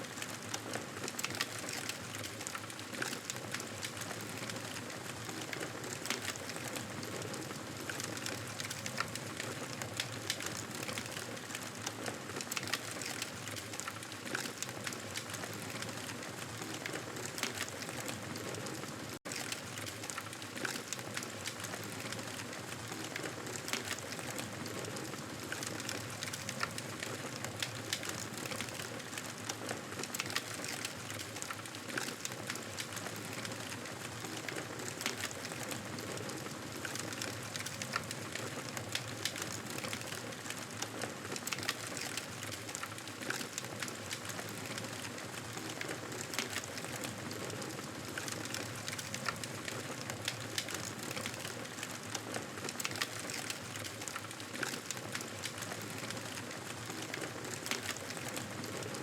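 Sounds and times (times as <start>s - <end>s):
wood fire crackling and popping: 0.1s - 59.0s.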